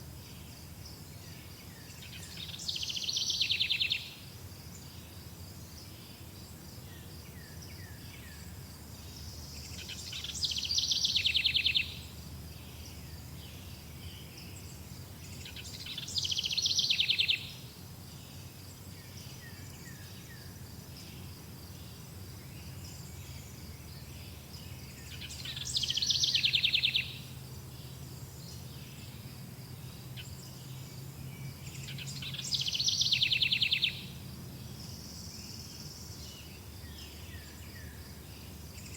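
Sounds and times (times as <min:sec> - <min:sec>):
songbird trilling: 0:09.7 - 0:12.1, 0:15.4 - 0:17.6, 0:25.0 - 0:27.3, 0:31.7 - 0:34.2.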